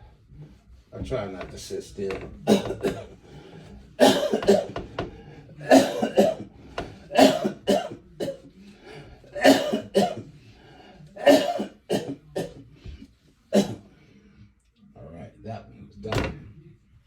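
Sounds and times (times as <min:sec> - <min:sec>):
man coughing: 0:02.5 - 0:03.2, 0:04.0 - 0:04.8, 0:05.6 - 0:06.5, 0:07.1 - 0:08.4, 0:09.4 - 0:10.2, 0:11.2 - 0:12.6, 0:13.6 - 0:13.8.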